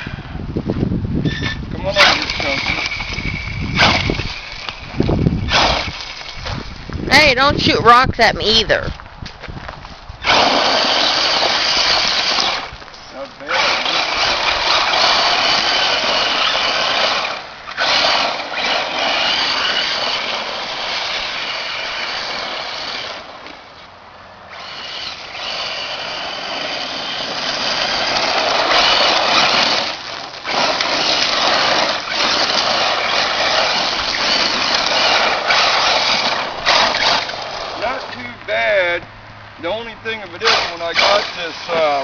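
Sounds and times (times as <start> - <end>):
tires throwing dirt and rocks: 0.6 - 7.3, 8.8 - 42.0
electric motor whine: 10.2 - 12.8, 13.4 - 23.6, 24.5 - 38.3.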